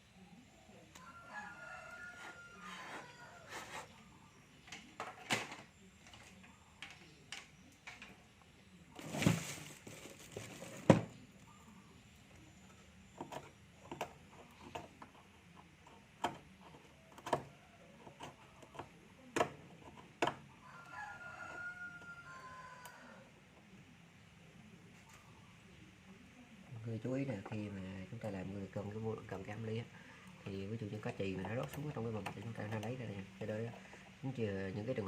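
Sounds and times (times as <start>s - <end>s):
scraping rustle: 1.9s - 4.2s, 8.9s - 11.4s
hand tools clicking and tapping: 13.2s - 20.4s.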